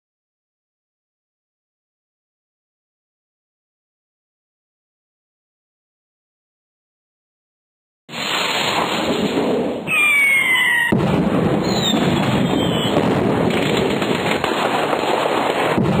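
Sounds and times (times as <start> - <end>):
loud dense crackling: 8.1 - 16.0
falling whistle: 9.9 - 11.0, 11.6 - 13.0.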